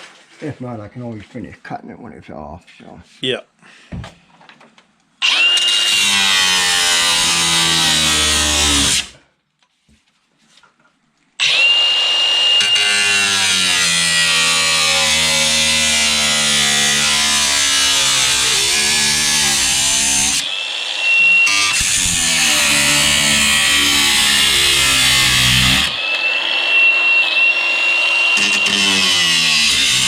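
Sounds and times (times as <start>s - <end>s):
cut-off wheel cutting steel: 5.2s - 9.2s, 11.4s - 30.0s.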